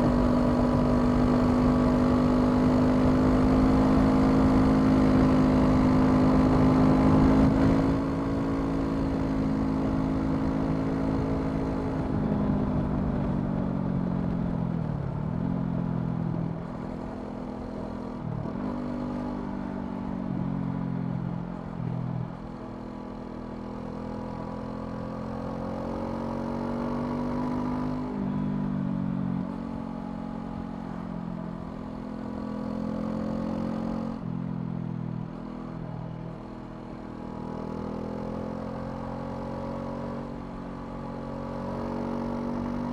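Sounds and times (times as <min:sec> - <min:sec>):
motorcycle engine revving: 0:00.0 - 0:12.3, 0:35.2 - 0:42.9.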